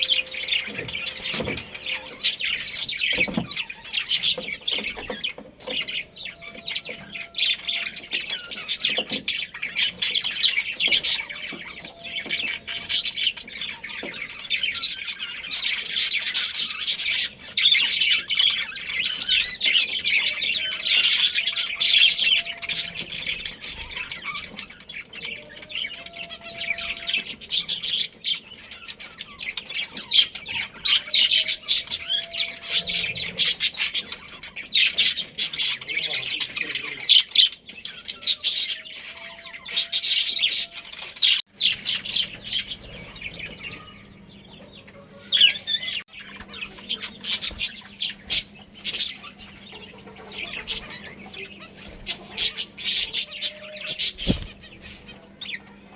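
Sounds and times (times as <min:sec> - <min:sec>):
budgerigars chirping and chattering: 0:00.0 - 0:55.9.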